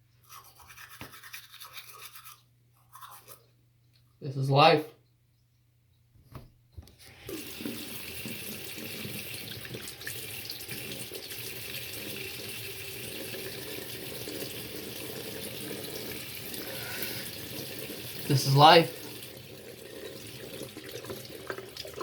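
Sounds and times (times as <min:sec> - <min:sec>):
faucet running into a sink: 0:07.3 - 0:22.0.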